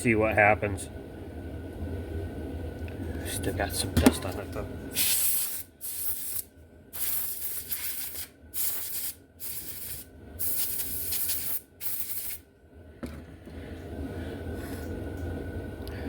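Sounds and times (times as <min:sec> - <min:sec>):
short bursts of scratchy hiss: 0:05.0 - 0:12.4.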